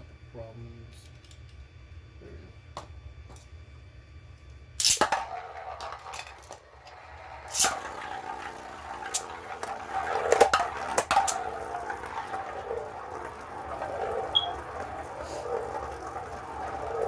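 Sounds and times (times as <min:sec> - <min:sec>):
spinning top launch rip: 0:04.8 - 0:06.3, 0:07.1 - 0:17.0
spinning tops clacking together: 0:04.8 - 0:06.7, 0:07.3 - 0:17.0
spinning tops whirring: 0:04.8 - 0:17.0.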